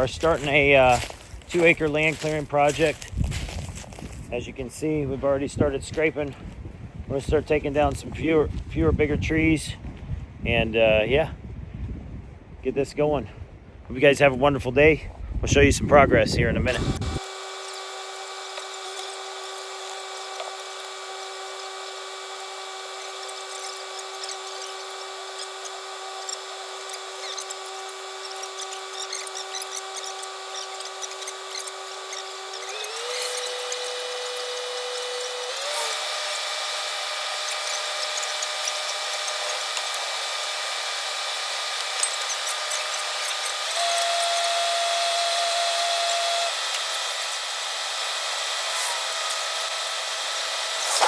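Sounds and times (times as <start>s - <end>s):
high-pitched machine whine: 16.7s - 51.0s.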